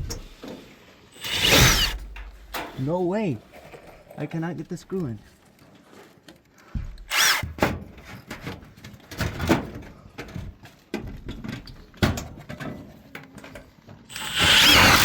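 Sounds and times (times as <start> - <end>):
knocks and scuffs from handling tools: 6.1 - 12.9.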